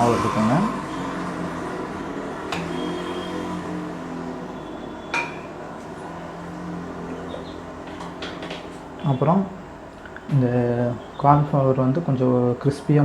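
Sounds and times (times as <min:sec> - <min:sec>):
ringing metal clink: 0:05.0 - 0:05.5.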